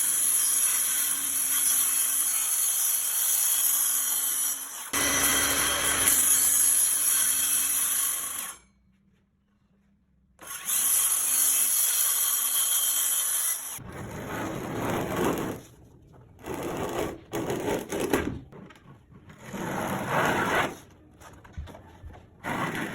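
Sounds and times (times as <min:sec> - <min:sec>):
circular saw cutting: 0:00.0 - 0:08.7, 0:10.4 - 0:13.8.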